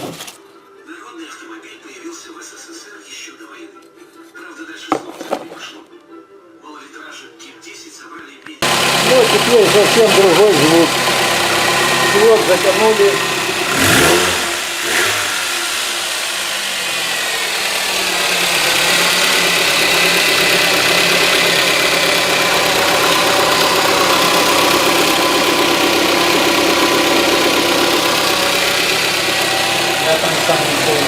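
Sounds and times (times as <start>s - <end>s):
car engine running: 8.6s - 31.0s.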